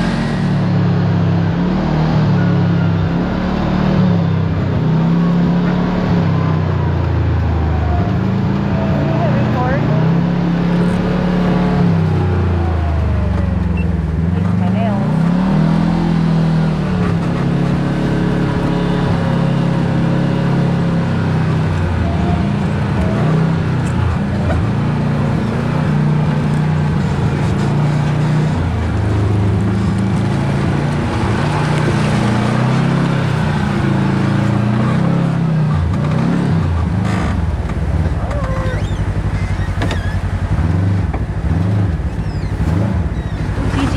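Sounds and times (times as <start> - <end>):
vehicle engine revving while driving: 0.0 - 43.9
tyre and wind noise: 15.2 - 43.9.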